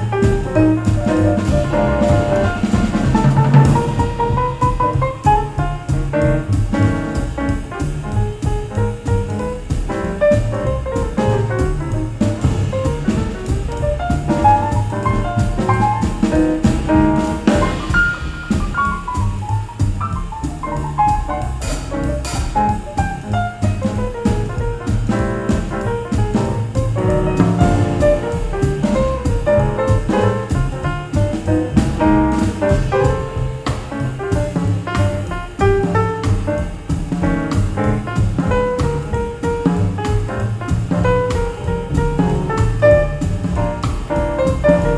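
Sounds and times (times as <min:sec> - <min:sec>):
double bass: 0:00.0 - 0:44.9
drum kit: 0:00.0 - 0:44.9
jazz piano: 0:00.0 - 0:44.9.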